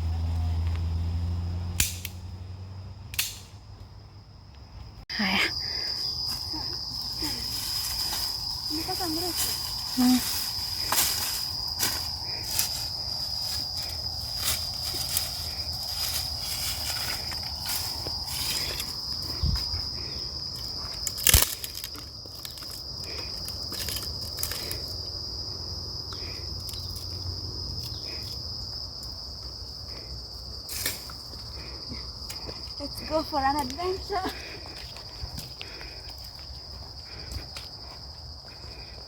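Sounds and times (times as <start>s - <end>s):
insects droning: 0.0s - 39.0s
footsteps on trail: 6.1s - 25.4s, 31.1s - 39.0s.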